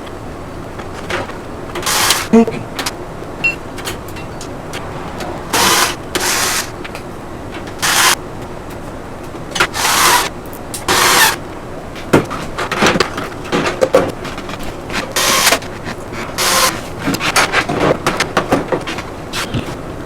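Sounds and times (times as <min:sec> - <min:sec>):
short scraping or rustling: 0:04.0 - 0:08.2.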